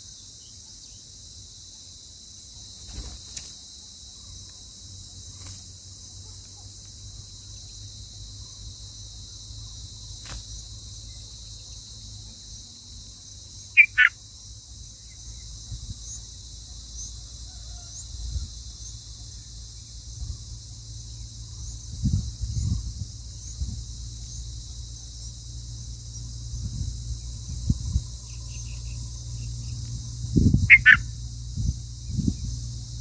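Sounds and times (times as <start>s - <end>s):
insects droning: 0.0s - 33.0s
loud chirp-like call: 13.8s - 14.1s, 30.7s - 31.0s.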